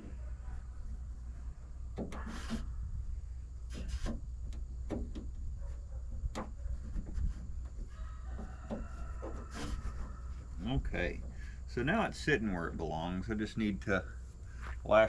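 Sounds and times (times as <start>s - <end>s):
steady low hum: 0.0s - 15.0s
short scraping rubs: 2.1s - 2.9s, 3.6s - 4.6s, 6.4s - 11.6s.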